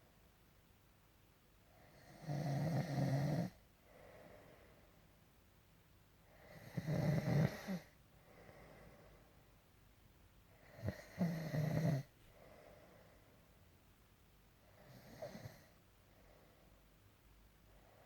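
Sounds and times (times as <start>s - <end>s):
quiet breathing: 1.6s - 5.4s, 6.2s - 9.7s, 10.4s - 13.9s, 14.5s - 18.0s
man snoring: 1.9s - 3.6s, 6.5s - 7.9s, 10.7s - 12.1s, 14.9s - 15.7s.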